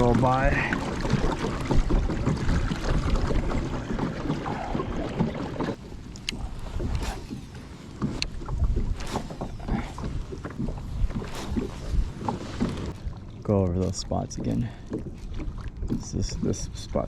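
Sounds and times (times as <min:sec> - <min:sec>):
wind buffeting microphone: 0:00.0 - 0:13.3
water moving against kayak: 0:00.0 - 0:17.0.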